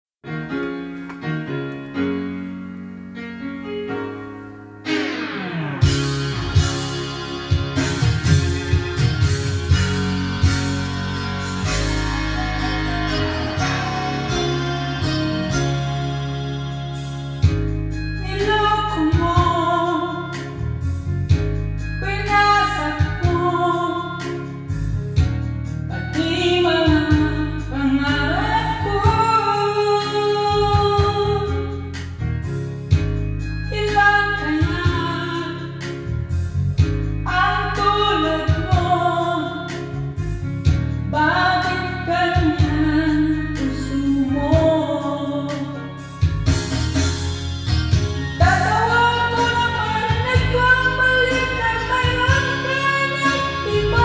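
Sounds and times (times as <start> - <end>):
guitar: 0.5 - 54.0
bass line: 4.8 - 54.0
person singing: 4.9 - 17.2.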